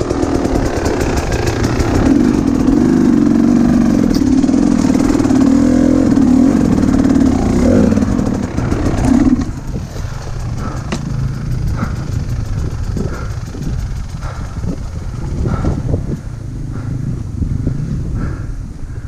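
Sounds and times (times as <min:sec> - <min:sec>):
dirt bike engine running: 0:00.0 - 0:19.0
low rumble: 0:00.0 - 0:19.0.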